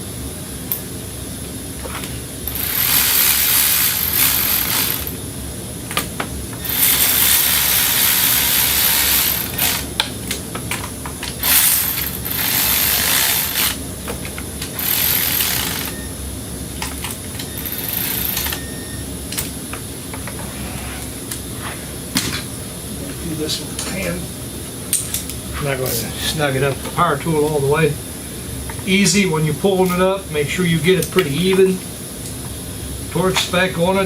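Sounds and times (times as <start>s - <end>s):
power tool running bolts: 2.0s - 5.2s, 5.9s - 10.1s, 10.7s - 16.1s, 16.8s - 21.0s.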